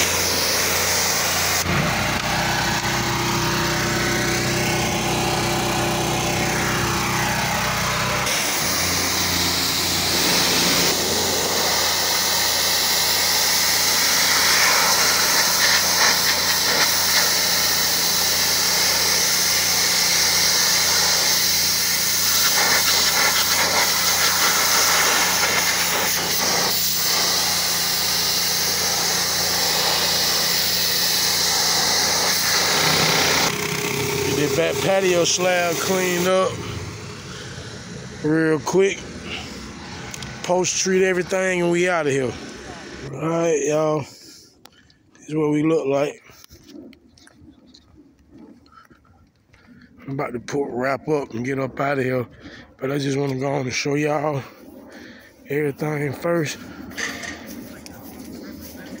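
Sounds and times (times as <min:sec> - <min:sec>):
pressure washer engine running: 0:00.0 - 0:43.5, 0:54.4 - 0:59.0
water spraying onto concrete: 0:07.2 - 0:36.3.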